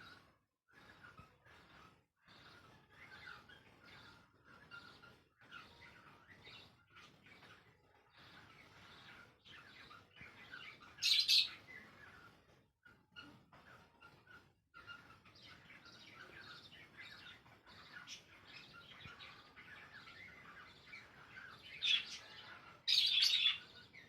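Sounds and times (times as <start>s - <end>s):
cockatiel chirping: 8.3s - 12.3s, 13.9s - 24.0s.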